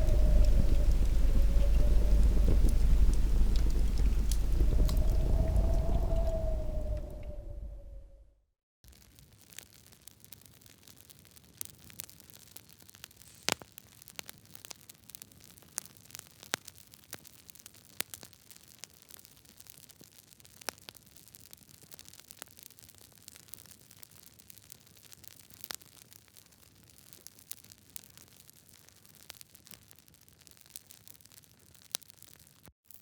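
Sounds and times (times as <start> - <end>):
fire crackling: 0.0 - 8.2, 8.9 - 18.2.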